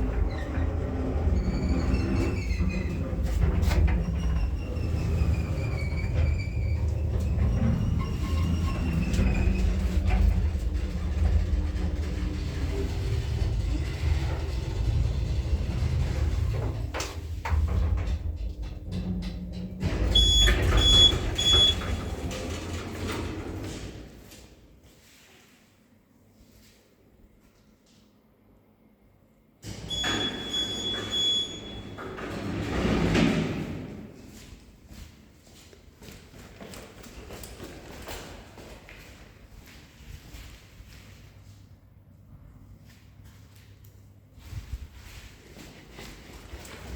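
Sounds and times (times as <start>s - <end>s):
lift car rumbling: 0.0s - 24.1s, 29.7s - 34.0s.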